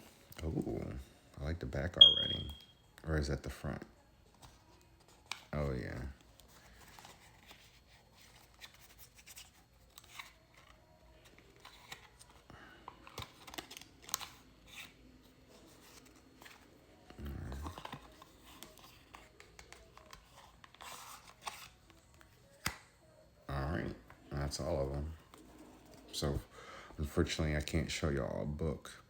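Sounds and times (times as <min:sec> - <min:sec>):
cards clicking and rustling: 0:04.4 - 0:22.9.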